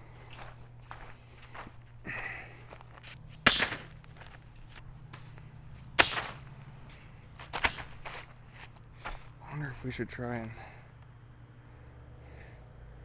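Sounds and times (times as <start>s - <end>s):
steady low hum: 0.0s - 13.0s
sharp impacts: 3.0s - 4.3s, 6.0s - 9.2s.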